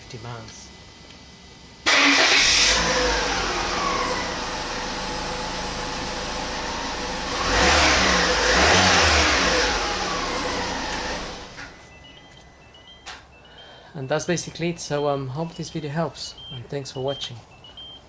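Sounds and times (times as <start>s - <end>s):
car engine starting and idling: 1.8s - 11.8s
engine revving: 1.9s - 11.6s.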